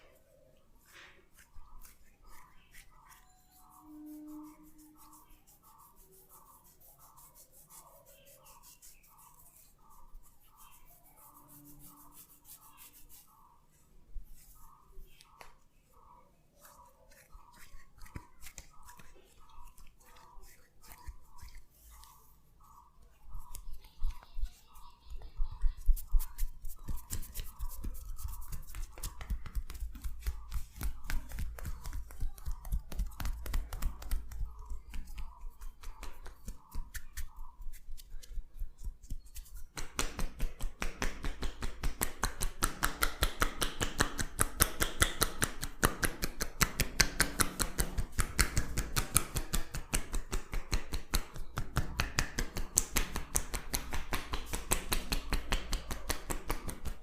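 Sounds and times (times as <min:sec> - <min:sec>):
hands slapping head: 0:25.9 - 0:57.0.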